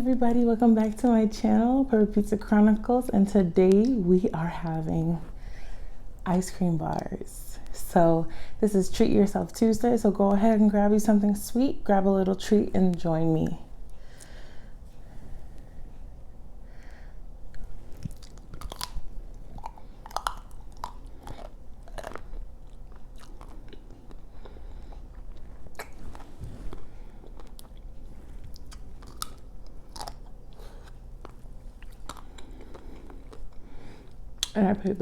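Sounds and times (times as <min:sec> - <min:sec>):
chocolate shell crunching: 0:17.5 - 0:26.2, 0:27.2 - 0:34.6.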